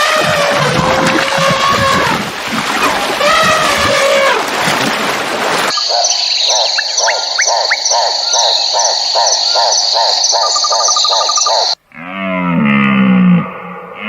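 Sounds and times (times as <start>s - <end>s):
high-pitched trill: 5.7s - 11.8s.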